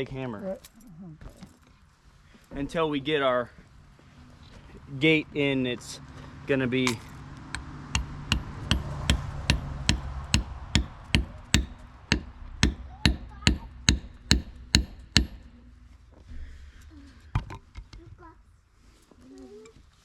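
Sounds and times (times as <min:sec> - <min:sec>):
hammer striking metal: 0:07.5 - 0:15.5.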